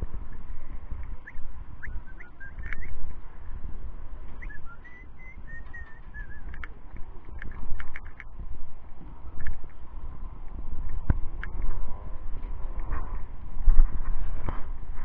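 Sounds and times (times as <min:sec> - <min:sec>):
low rumbling noise: 0:00.0 - 0:15.0
high whistled chirps: 0:01.2 - 0:03.0, 0:04.4 - 0:06.7.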